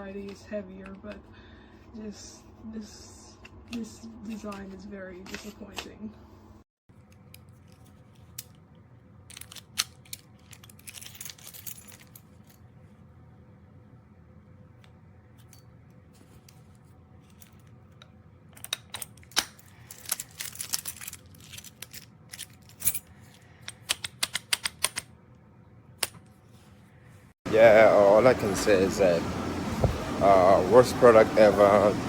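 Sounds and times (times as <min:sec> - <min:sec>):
steel lock clicking and rattling: 0:09.3 - 0:11.6, 0:23.7 - 0:25.1.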